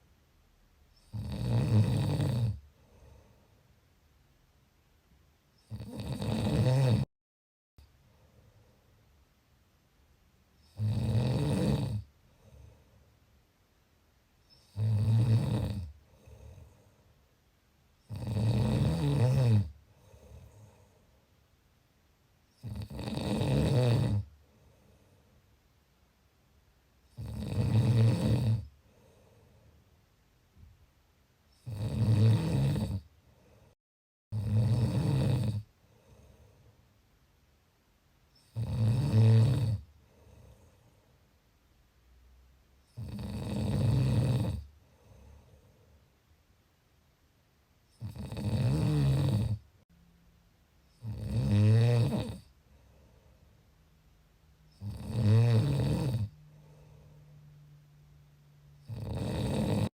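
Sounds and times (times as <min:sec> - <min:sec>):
person snoring: 0:01.0 - 0:03.4, 0:05.6 - 0:07.1, 0:10.6 - 0:12.8, 0:14.6 - 0:16.8, 0:18.1 - 0:20.9, 0:22.6 - 0:24.3, 0:27.1 - 0:29.2, 0:31.6 - 0:33.0, 0:34.3 - 0:36.5, 0:38.5 - 0:40.8, 0:42.9 - 0:45.7, 0:48.0 - 0:49.6, 0:51.0 - 0:52.6, 0:54.7 - 0:57.3, 0:58.8 - 0:59.9
soft breath out: 0:02.7 - 0:03.7, 0:12.2 - 0:13.2, 0:19.9 - 0:21.3, 0:28.8 - 0:29.9, 0:35.8 - 0:36.9, 0:44.8 - 0:46.1, 0:52.6 - 0:53.7, 0:56.3 - 0:57.7.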